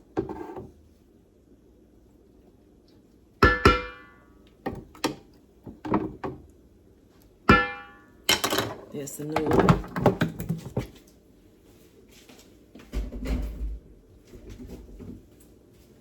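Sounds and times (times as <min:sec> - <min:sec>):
metal cookware knocking together: 0:03.4 - 0:04.2, 0:07.5 - 0:08.8.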